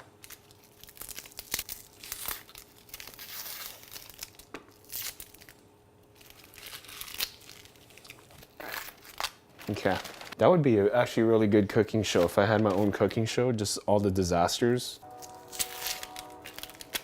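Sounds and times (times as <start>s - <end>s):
onion skin crinkling: 0.0s - 10.4s.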